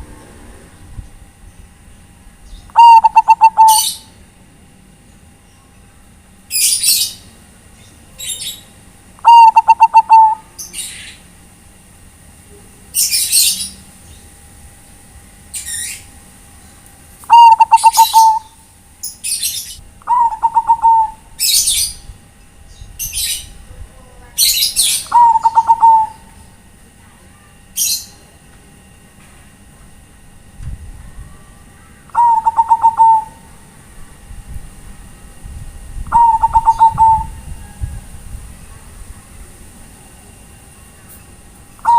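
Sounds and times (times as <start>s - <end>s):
high-pitched bird chirps: 2.5s - 4.1s, 8.2s - 11.2s, 17.3s - 22.1s, 24.4s - 26.3s, 32.1s - 33.4s, 36.1s - 37.4s
dove cooing: 2.7s - 4.2s, 9.2s - 10.8s, 17.3s - 18.6s, 20.0s - 22.1s, 24.5s - 26.4s, 31.4s - 33.5s, 36.1s - 38.2s.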